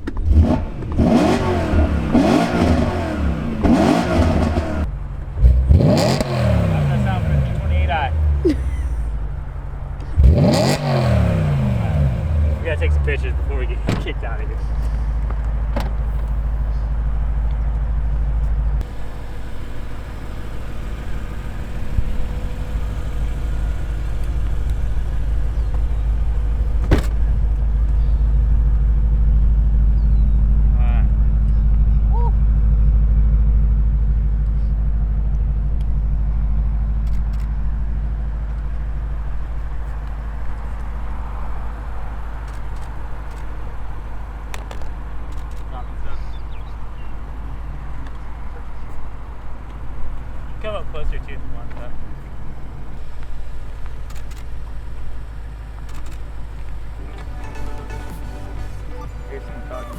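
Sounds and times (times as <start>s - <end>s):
car engine revving: 0.0s - 45.8s
road noise: 0.0s - 59.9s.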